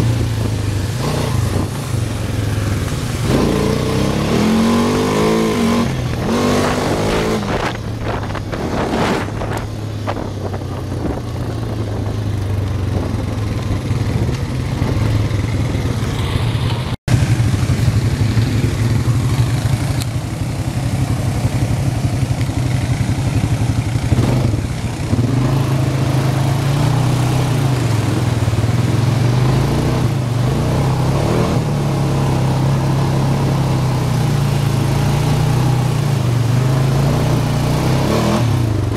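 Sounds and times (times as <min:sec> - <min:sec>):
atv engine running: 0:00.0 - 0:38.9.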